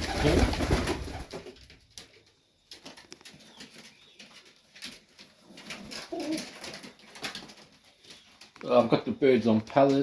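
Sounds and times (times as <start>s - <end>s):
rustling: 0.0s - 10.0s
pigeons cooing: 5.6s - 7.6s.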